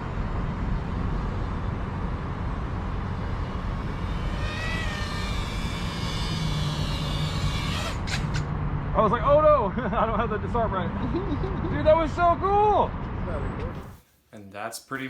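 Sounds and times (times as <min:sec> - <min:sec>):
high wavering whine: 0:00.0 - 0:08.1
drone propellers buzzing: 0:00.0 - 0:08.9.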